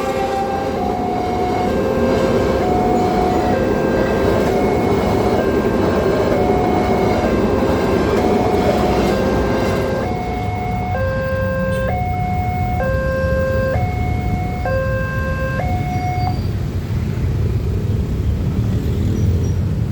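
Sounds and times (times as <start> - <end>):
two-tone crossing alarm: 0.0 - 16.5
low rumble of vehicles: 0.0 - 19.9.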